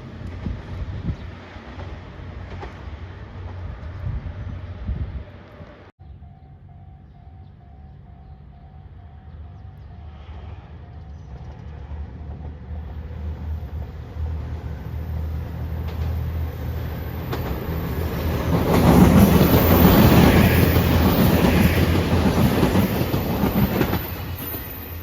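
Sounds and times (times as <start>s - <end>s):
train wheels clattering over rails: 15.6s - 25.0s.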